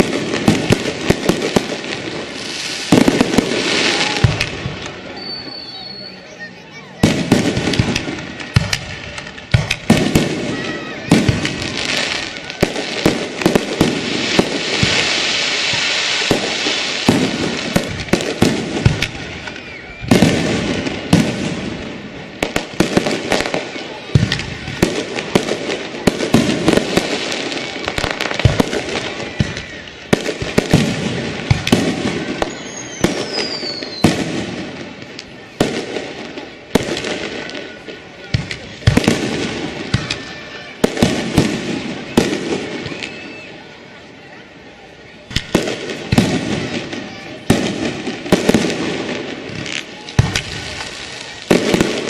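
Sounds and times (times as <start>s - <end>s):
fireworks bangs: 0.0s - 52.0s
fireworks crackling: 0.0s - 52.0s
descending firework whistle: 2.3s - 8.8s, 31.4s - 34.4s, 39.8s - 43.7s.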